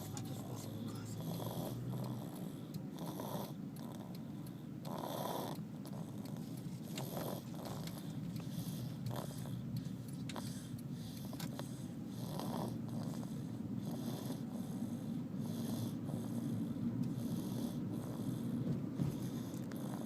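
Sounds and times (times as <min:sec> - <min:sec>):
person snoring: 0:00.0 - 0:04.2.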